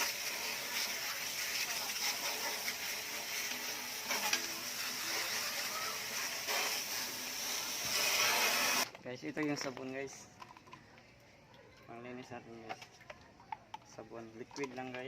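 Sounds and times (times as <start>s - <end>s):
water spraying hiss: 0.0s - 8.8s.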